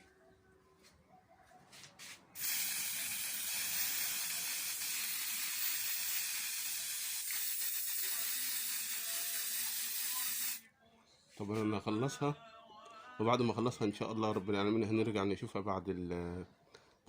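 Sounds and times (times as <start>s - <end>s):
spray paint hissing: 2.4s - 10.6s.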